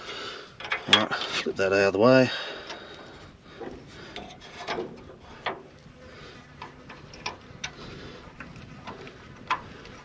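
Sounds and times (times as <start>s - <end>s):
metal tools clicking and knocking: 0.6s - 1.3s.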